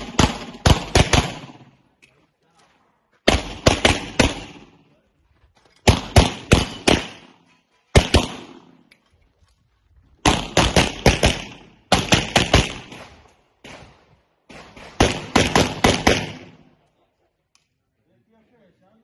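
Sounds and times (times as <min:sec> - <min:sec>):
rapid pistol shots with echo: 0:00.0 - 0:01.9, 0:03.2 - 0:04.9, 0:05.8 - 0:08.8, 0:10.2 - 0:16.7.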